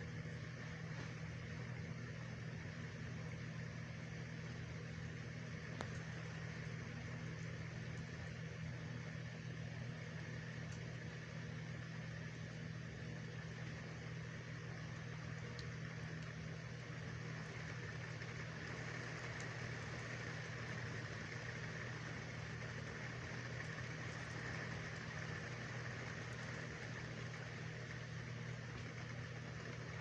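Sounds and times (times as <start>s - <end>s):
low mechanical hum: 0.0s - 30.0s
rain hiss: 17.1s - 30.0s.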